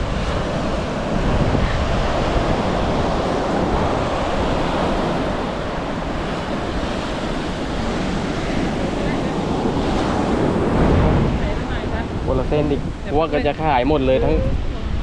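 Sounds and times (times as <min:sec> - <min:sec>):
ocean surf breaking: 0:00.0 - 0:15.0
wind buffeting microphone: 0:00.0 - 0:15.0.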